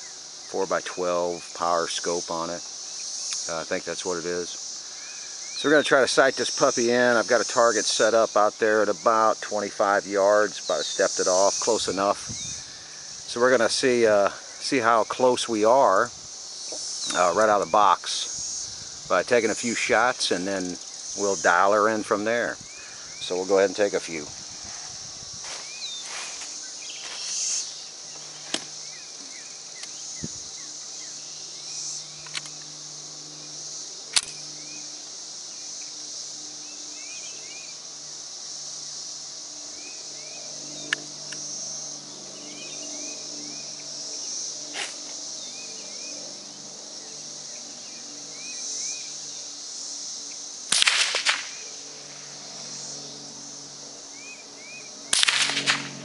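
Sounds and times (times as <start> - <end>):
high insect drone: 0.0 - 56.0
rifle shots: 50.7 - 51.6, 55.1 - 56.0.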